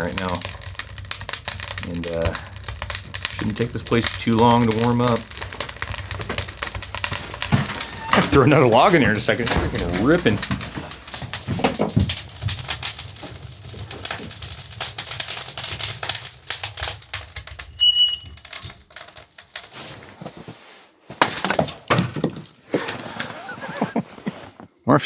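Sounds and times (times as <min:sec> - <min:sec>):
wood fire crackling: 0:00.0 - 0:24.7
loud knocks: 0:06.1 - 0:12.3
high whistle: 0:17.7 - 0:18.4.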